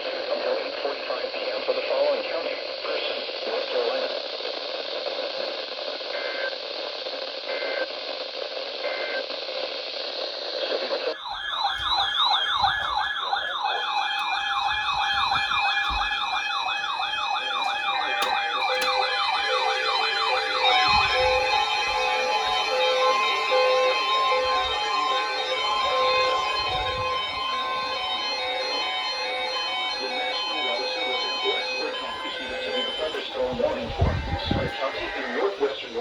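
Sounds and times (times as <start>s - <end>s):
radio static: 0.0s - 36.0s
steady electronic tones: 11.1s - 36.0s
warbling siren alert tone: 11.1s - 36.0s.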